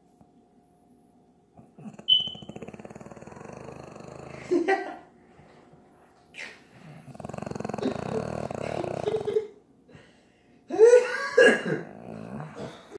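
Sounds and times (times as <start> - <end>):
snore: 1.8 - 4.5, 6.8 - 9.4, 11.8 - 12.9.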